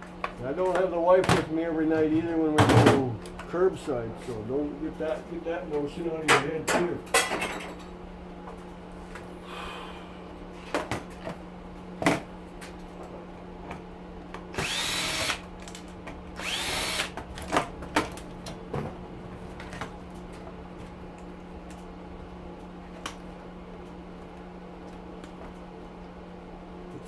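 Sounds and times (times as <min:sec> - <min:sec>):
cordless drill spinning: 0:14.5 - 0:15.8, 0:16.4 - 0:17.2.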